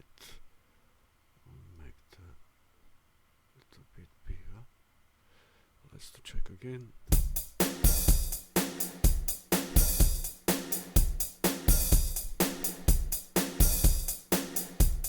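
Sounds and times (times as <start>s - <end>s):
looped drum kit beat: 7.1s - 15.0s.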